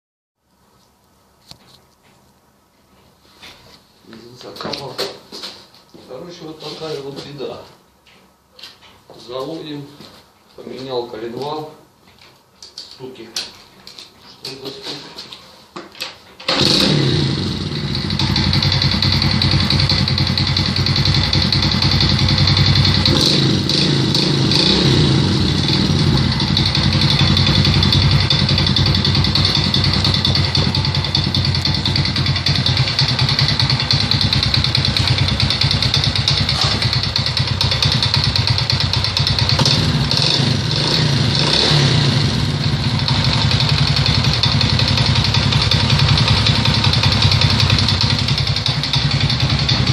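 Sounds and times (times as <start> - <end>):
moped engine idling: 16.5 - 49.9
engine knocking: 18.1 - 23.3, 25.7 - 40.3, 43.0 - 49.9.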